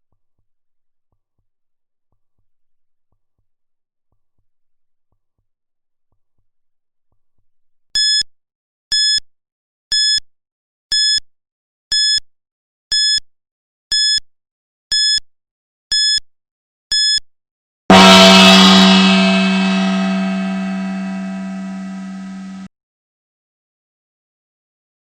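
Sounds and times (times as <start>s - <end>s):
loud gong ringing: 17.9s - 22.7s.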